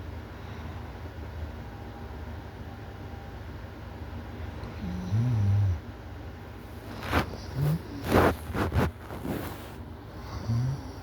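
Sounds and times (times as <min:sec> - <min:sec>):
person snoring: 0:10.2 - 0:11.0.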